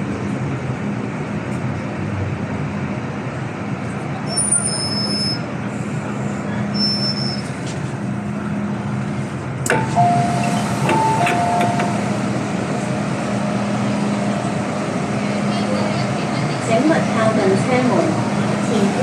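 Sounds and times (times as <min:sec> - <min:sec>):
low hum inside train car: 0:00.0 - 0:19.0
train rumbling: 0:00.0 - 0:19.0
two-note chime: 0:09.7 - 0:12.2.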